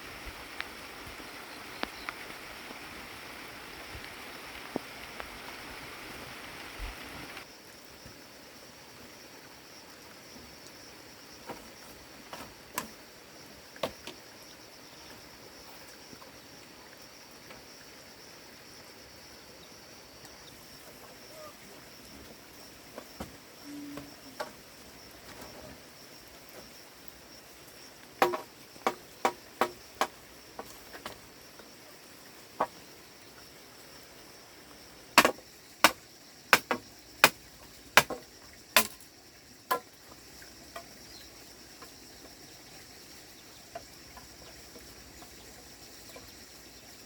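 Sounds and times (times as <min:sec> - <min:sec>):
rushing water-like hiss: 0:00.0 - 0:47.0
high-pitched insect drone: 0:23.6 - 0:26.8
sharp knocks: 0:28.2 - 0:30.1, 0:35.2 - 0:36.0, 0:36.6 - 0:37.4, 0:38.0 - 0:38.2.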